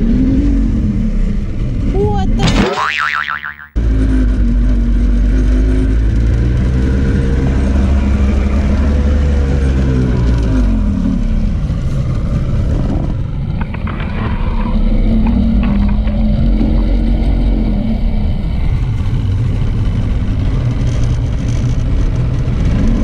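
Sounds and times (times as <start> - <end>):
boat engine revving and idling: 3.8 - 13.5.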